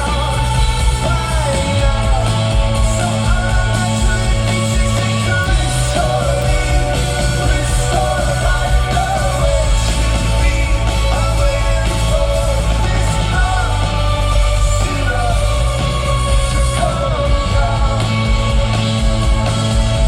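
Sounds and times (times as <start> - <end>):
heavy bass: 0.0 - 20.0
person singing: 0.0 - 20.0
rock band playing live: 0.0 - 20.0.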